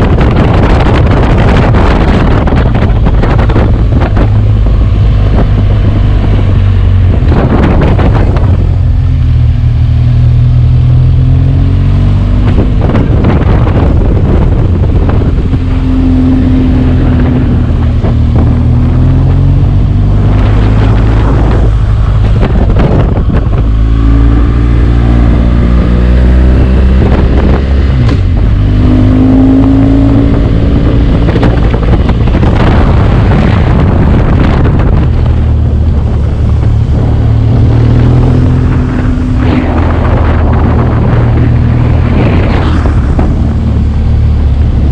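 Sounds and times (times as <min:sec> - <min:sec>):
motorcycle engine while riding: 0:00.0 - 0:44.9
wind buffeting on microphone: 0:00.0 - 0:44.9.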